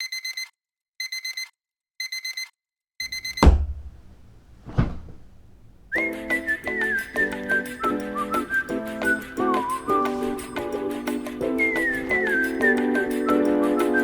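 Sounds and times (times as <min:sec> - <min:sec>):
digital alarm clock beeping: 0:00.0 - 0:02.5
heavy thump: 0:03.1 - 0:06.4
whistled melody over chords: 0:05.9 - 0:14.0.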